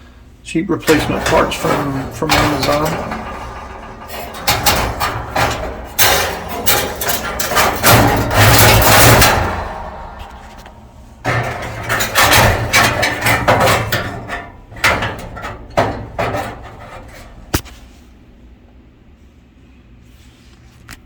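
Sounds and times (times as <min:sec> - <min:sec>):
sheet metal rattling and knocking: 0:00.8 - 0:18.0.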